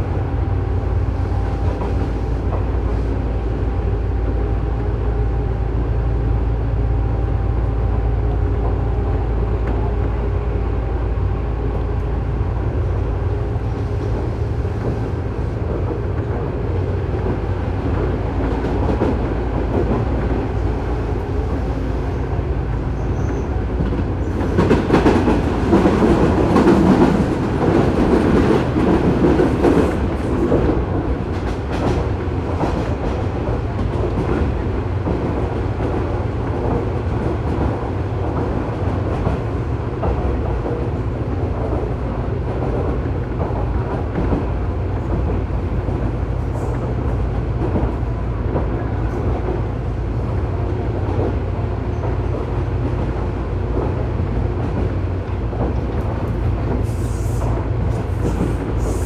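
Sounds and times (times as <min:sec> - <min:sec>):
low train hum: 0:00.0 - 0:59.0.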